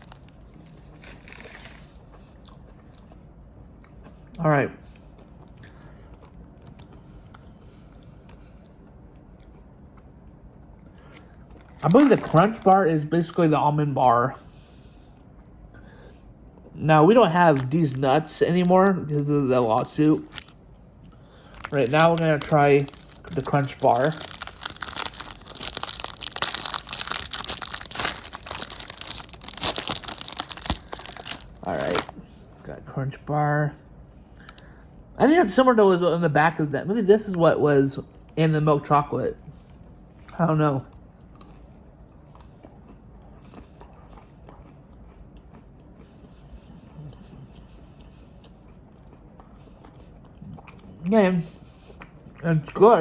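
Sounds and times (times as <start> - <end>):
wrapper crinkling and tearing: 0.0 - 1.9, 11.6 - 13.4, 17.3 - 20.6, 21.5 - 32.2
person chewing chocolate bar: 0.0 - 13.4, 17.4 - 32.4, 39.6 - 51.1
faint crunching with clicks: 3.8 - 13.5, 17.4 - 32.2, 34.4 - 34.7.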